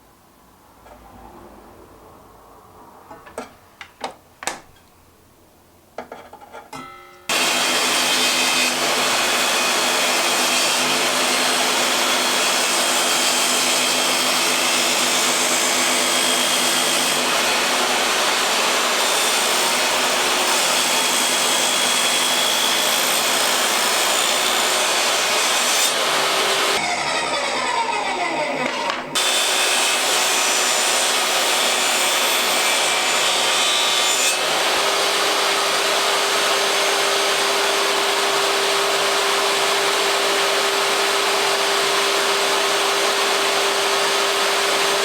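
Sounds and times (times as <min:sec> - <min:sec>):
handling knocks and taps: 0:03.1 - 0:05.0
electric power tool running: 0:26.0 - 0:30.1.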